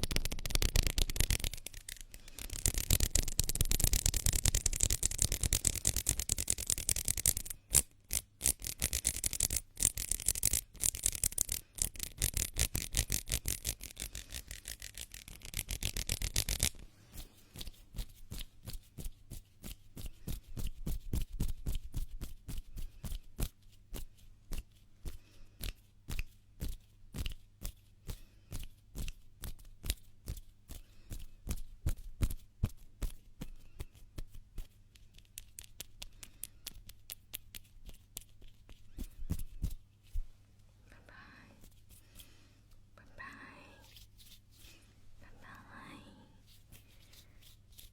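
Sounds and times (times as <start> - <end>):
hands rubbing together: 0.0 - 23.8, 43.8 - 44.9, 46.4 - 47.9.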